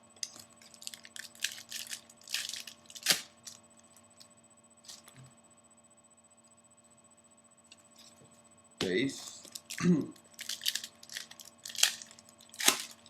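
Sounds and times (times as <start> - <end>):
faint background hum: 0.0 - 13.0.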